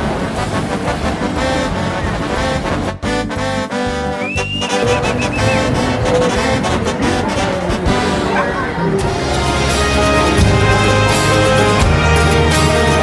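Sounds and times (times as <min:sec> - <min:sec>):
swing music with brass: 0:00.0 - 0:13.0.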